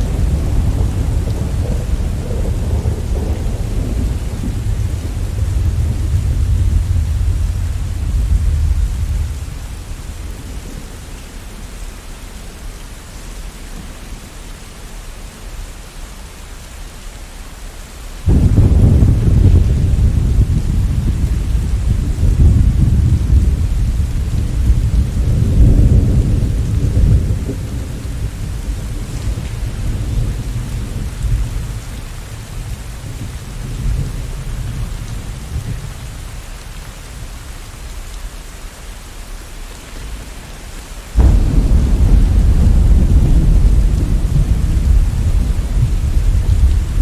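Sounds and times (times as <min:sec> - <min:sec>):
loud thunderclap: 0:00.0 - 0:10.9, 0:18.3 - 0:35.8, 0:41.2 - 0:47.0
thunder rumbling: 0:00.0 - 0:11.8, 0:18.2 - 0:37.3, 0:40.1 - 0:47.0
steady rain: 0:00.0 - 0:47.0.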